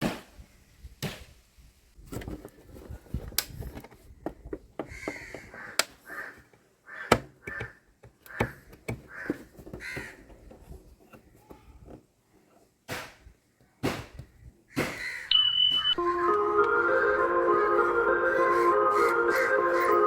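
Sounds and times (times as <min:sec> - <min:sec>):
crows cawing: 0:04.8 - 0:10.2, 0:14.7 - 0:15.3.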